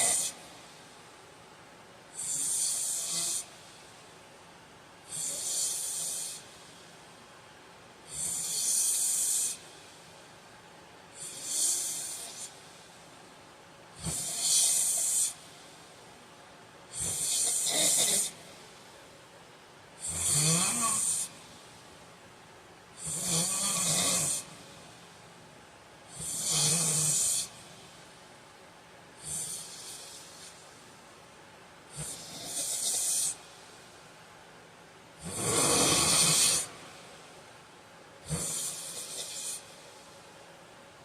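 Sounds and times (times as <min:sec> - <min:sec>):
man snoring: 0:00.0 - 0:00.4, 0:02.2 - 0:03.5, 0:05.1 - 0:06.4, 0:08.1 - 0:09.6, 0:11.2 - 0:12.5, 0:14.0 - 0:15.4, 0:16.9 - 0:18.4, 0:20.0 - 0:21.3, 0:23.0 - 0:24.5, 0:26.1 - 0:27.5, 0:29.2 - 0:30.5, 0:31.9 - 0:33.4, 0:35.2 - 0:36.8, 0:38.2 - 0:39.7.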